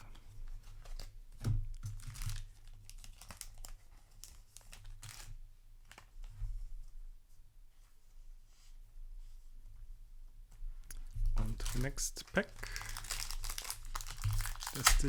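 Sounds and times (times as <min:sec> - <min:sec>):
plastic card sleeve crinkling: 0:02.0 - 0:05.3, 0:10.9 - 0:15.0.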